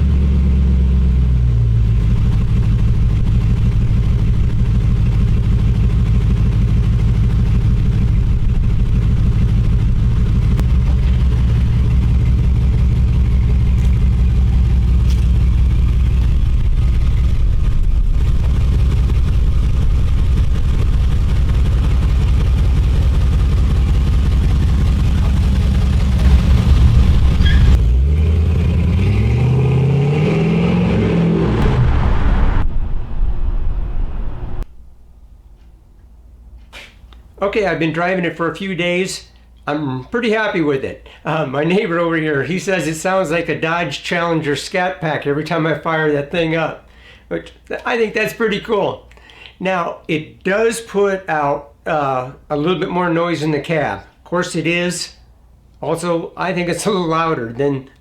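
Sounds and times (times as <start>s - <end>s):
engine revving: 0.0s - 34.7s
deep car exhaust running: 0.0s - 35.4s.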